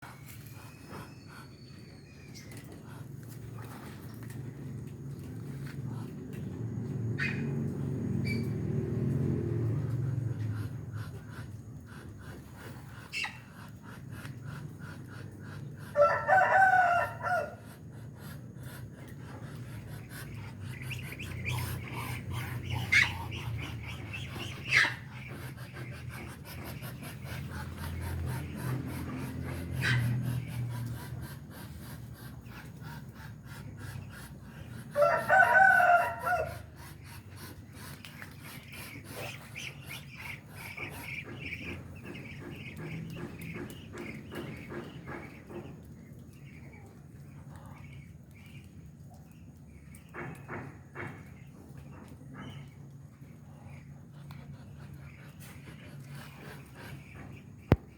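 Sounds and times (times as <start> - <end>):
rooster crowing: 16.0 - 17.6, 34.9 - 36.7.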